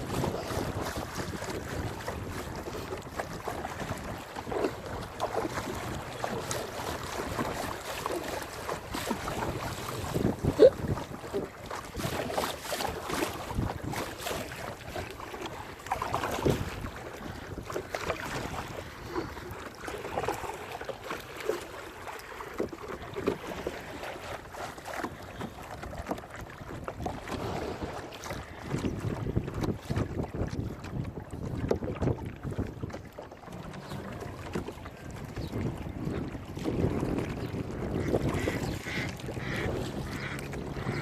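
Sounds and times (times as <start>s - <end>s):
wind buffeting microphone: 0.0s - 21.2s, 22.6s - 41.0s
paddle strokes splashing in water: 0.0s - 41.0s.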